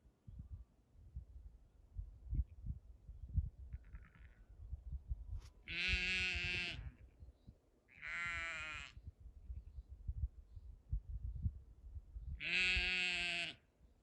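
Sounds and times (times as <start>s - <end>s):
sheep bleating: 5.7s - 6.9s, 7.9s - 9.0s, 12.4s - 13.6s.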